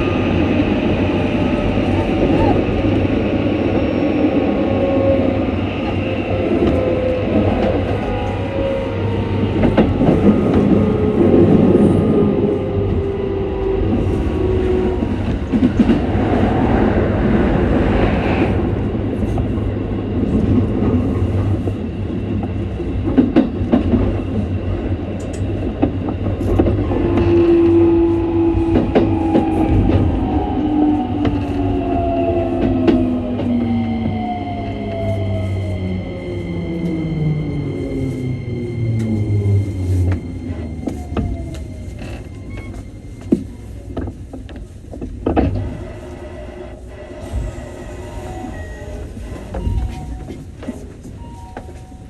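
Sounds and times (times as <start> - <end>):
deep train rumble: 0.0 - 52.0.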